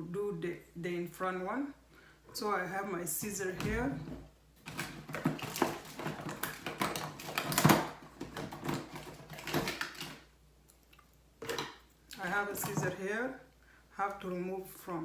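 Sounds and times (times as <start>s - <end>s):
wig rustling: 3.2s - 10.3s.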